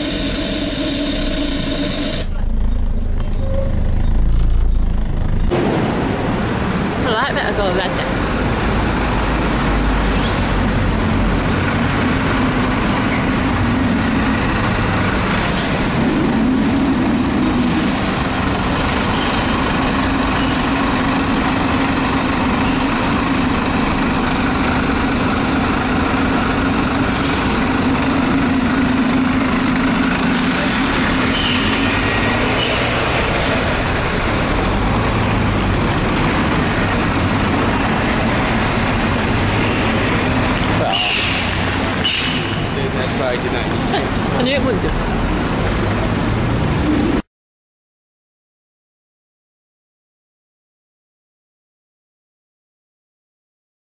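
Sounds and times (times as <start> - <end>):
loud suction noise: 0.0 - 2.4
bus engine drone: 0.0 - 47.3.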